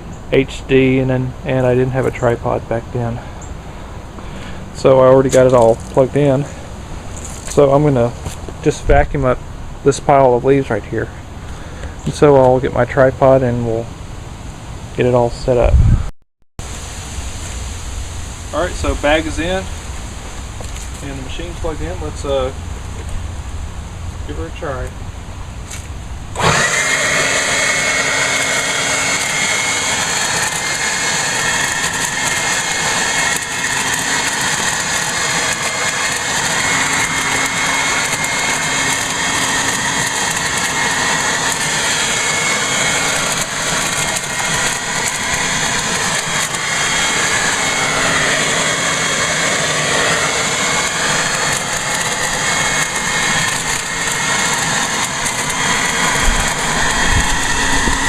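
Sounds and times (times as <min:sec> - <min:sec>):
electric leaf blower whining: 0:26.3 - 0:58.0
rush of air: 0:26.3 - 0:58.0.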